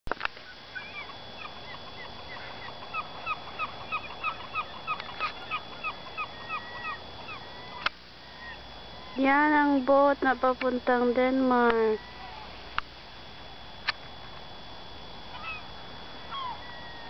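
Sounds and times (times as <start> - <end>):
birds making short hooked calls: 0.8 - 9.2.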